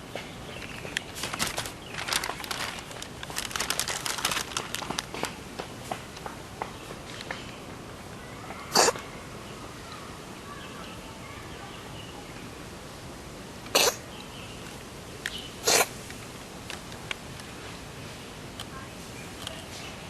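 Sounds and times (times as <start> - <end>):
cat sneezing: 8.7 - 9.0, 13.7 - 14.0, 15.6 - 15.9.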